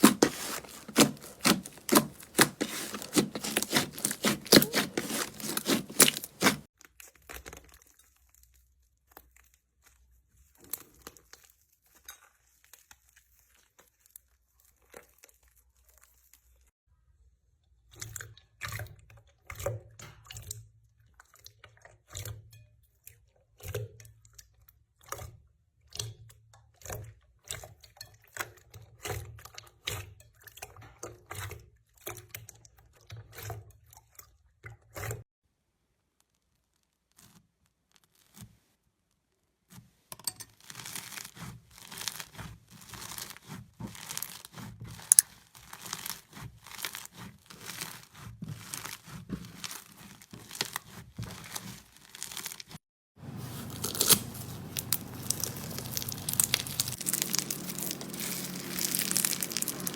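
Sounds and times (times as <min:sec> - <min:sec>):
slime clicking and crackling: 0:00.0 - 0:06.7, 0:40.7 - 0:59.9.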